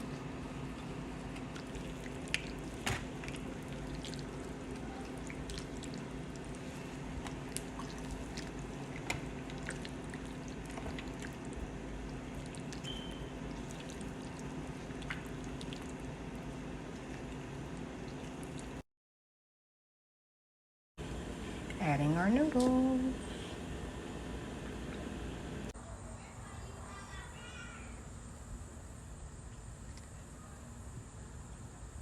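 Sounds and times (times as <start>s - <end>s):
steady low hum: 0.0s - 18.8s, 21.0s - 26.6s.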